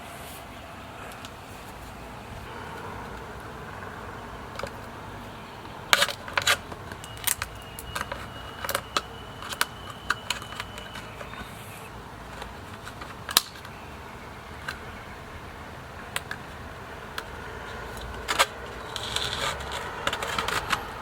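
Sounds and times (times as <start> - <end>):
clicks of small hard objects: 5.9 - 13.8.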